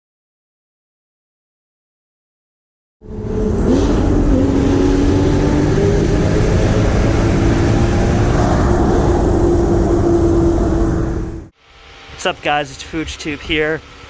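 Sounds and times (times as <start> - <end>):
car engine starting and droning: 3.0 - 12.4.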